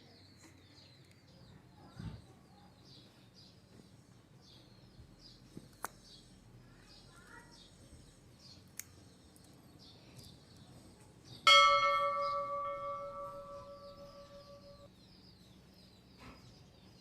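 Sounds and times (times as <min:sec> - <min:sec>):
small birds chirping: 0:00.0 - 0:17.0
ringing metallic strike: 0:11.5 - 0:14.9.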